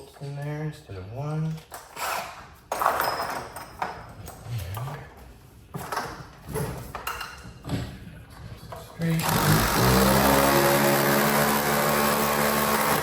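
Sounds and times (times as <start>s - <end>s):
metal tools clinking and knocking: 1.5s - 5.1s, 5.7s - 7.9s.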